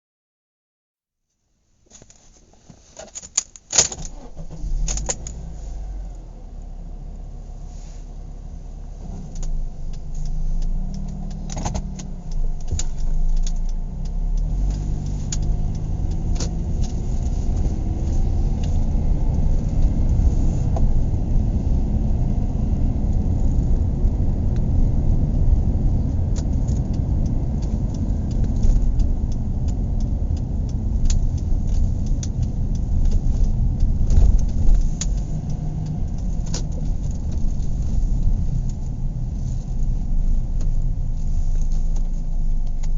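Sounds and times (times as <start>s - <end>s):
car engine hum and road rumble: 1.5s - 42.9s
small clicks and rattles: 25.6s - 42.9s.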